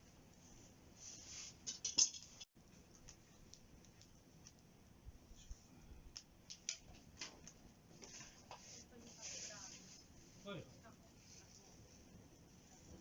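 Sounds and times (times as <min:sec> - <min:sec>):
campfire crackling and popping: 0:02.6 - 0:07.9.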